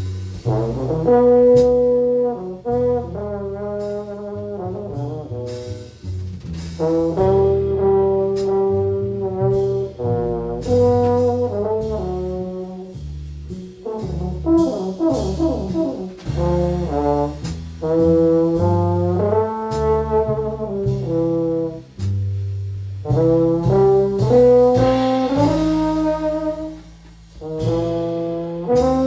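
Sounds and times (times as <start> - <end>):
cymbal and drum strokes: 0.0 - 29.0
walking bass: 0.0 - 29.0
horn playing slow melody: 0.4 - 5.9, 6.8 - 13.1, 13.8 - 22.0, 23.0 - 29.0.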